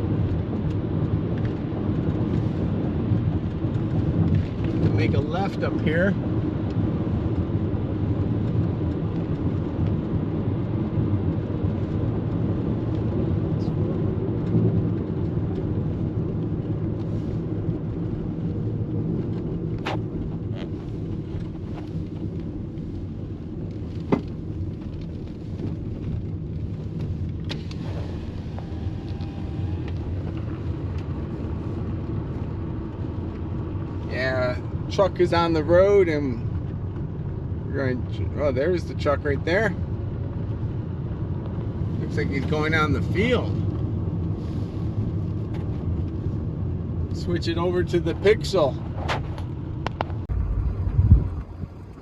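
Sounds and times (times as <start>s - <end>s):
car engine and tyre rumble: 0.0s - 52.0s.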